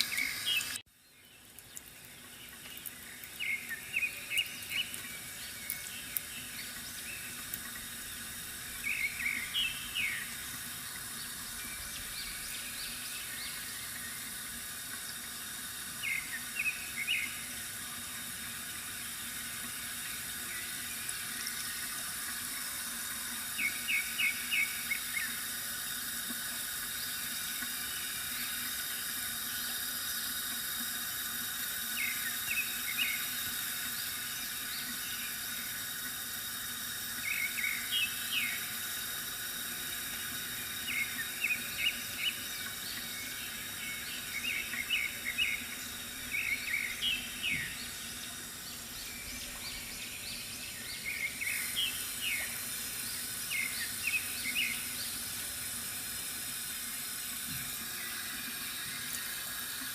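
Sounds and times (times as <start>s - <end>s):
small birds chirping: 0.0s - 17.6s, 23.5s - 25.6s, 31.8s - 35.6s, 37.2s - 38.8s, 40.0s - 55.3s
water trickling from fountain: 0.0s - 59.9s.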